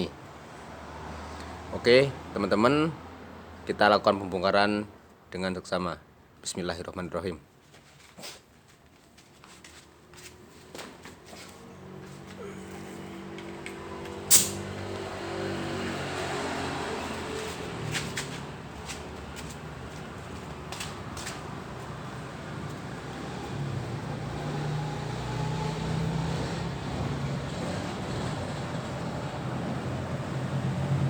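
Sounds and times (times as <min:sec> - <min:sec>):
vehicle engine humming: 0:10.0 - 0:31.0.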